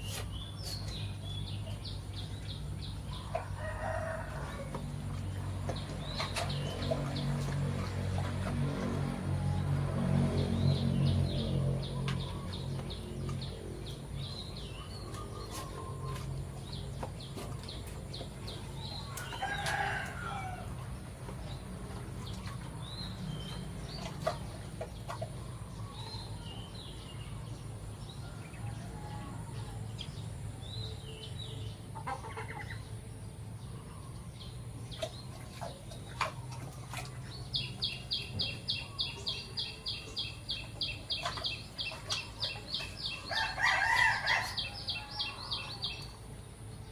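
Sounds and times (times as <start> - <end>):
rooster crowing: 3.4 - 4.7, 19.1 - 20.8, 28.2 - 29.8, 43.2 - 46.0
chickens clucking: 11.6 - 22.8, 23.4 - 26.5, 31.8 - 46.2.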